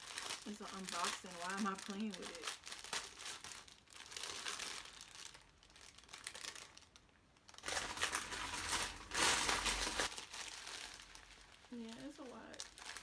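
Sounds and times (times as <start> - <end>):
paper filler crinkling: 0.0 - 13.0.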